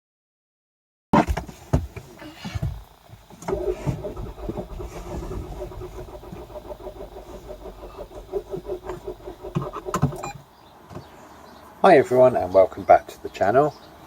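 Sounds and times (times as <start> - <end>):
car engine running: 2.8 - 10.7.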